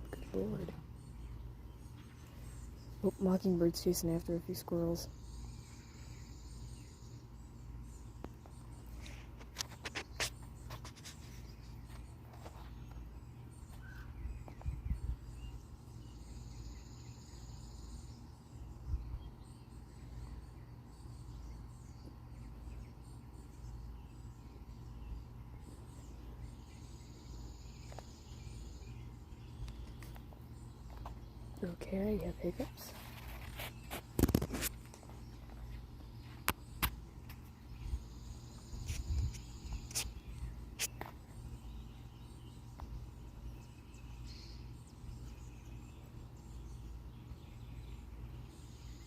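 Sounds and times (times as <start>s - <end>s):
faint high bird chirps: 0.0s - 49.0s
sharp clicks and rustles: 32.5s - 37.5s.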